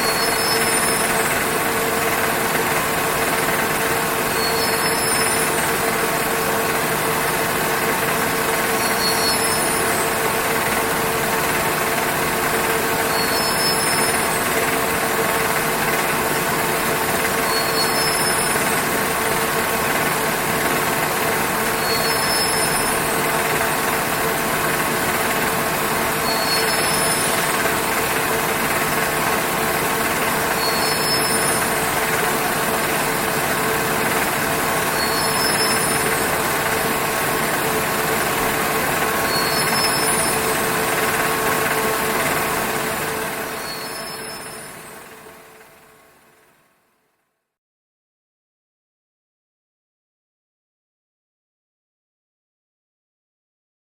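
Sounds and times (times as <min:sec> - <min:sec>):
faint high-pitched chirp: 0:00.0 - 0:01.2, 0:04.3 - 0:05.6, 0:08.8 - 0:10.1, 0:13.1 - 0:14.3, 0:17.4 - 0:18.6, 0:21.8 - 0:23.1, 0:26.2 - 0:27.5, 0:30.6 - 0:31.7, 0:35.0 - 0:36.2, 0:39.2 - 0:40.4, 0:43.6 - 0:44.9
textile machine whirring: 0:00.0 - 0:45.2.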